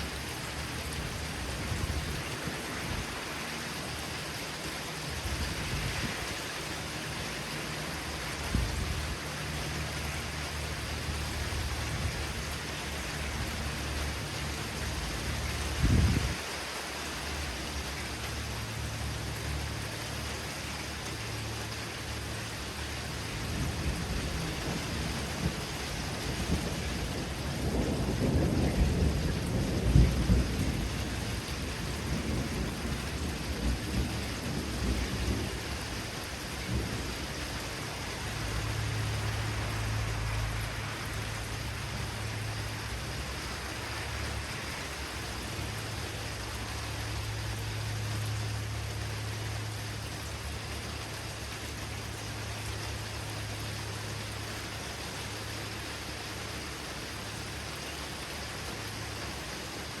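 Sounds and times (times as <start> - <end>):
steady rain: 0.0 - 60.0
thunder rumbling: 23.4 - 40.7.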